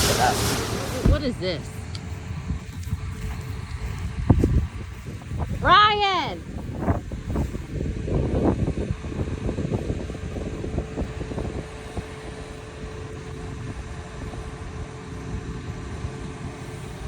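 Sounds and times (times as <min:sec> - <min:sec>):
irregular rattling: 0:00.0 - 0:01.9
machinery humming: 0:00.0 - 0:01.9.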